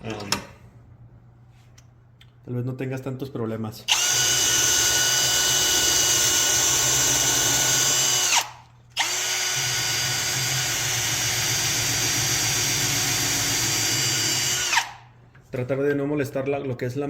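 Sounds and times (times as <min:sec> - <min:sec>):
electric drill running: 0:03.9 - 0:15.1.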